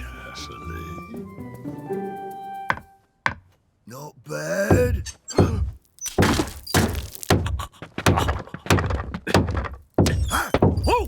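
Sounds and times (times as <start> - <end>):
heavy thuds: 4.7 - 11.0.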